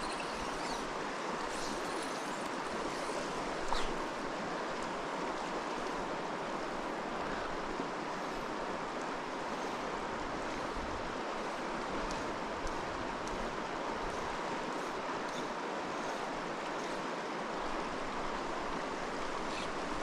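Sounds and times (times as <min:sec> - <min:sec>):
creek water rushing: 0:00.0 - 0:20.0.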